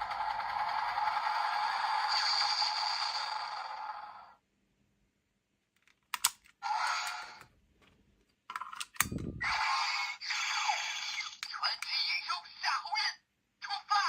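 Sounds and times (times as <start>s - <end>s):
plastic toy clicks: 5.8s - 7.3s
electronic toy sound effects: 9.4s - 13.0s.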